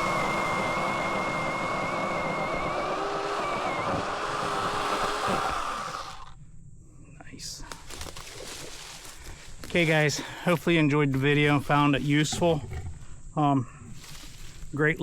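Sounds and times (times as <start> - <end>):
electric pole saw whining: 0.0 - 6.4.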